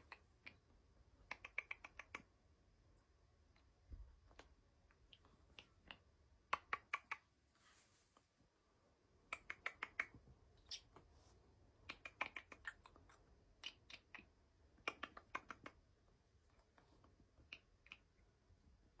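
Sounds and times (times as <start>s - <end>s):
cockatoo beak clicks: 0.0s - 2.3s, 4.3s - 7.3s, 9.2s - 11.1s, 11.8s - 15.9s, 16.5s - 18.3s
man making mouth clicks: 0.0s - 2.3s, 4.3s - 7.3s, 9.3s - 11.0s, 11.8s - 15.8s, 17.4s - 18.2s.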